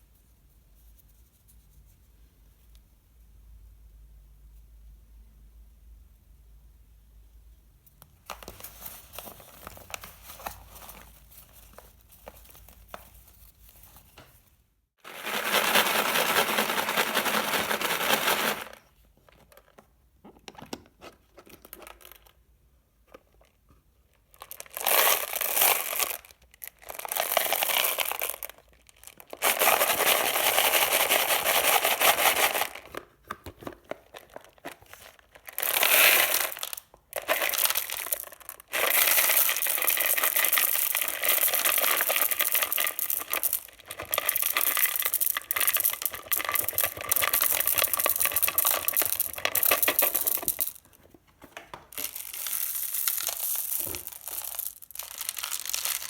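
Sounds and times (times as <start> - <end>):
candy packaging crinkling: 8.3 - 13.0, 15.0 - 19.9, 23.3 - 56.0.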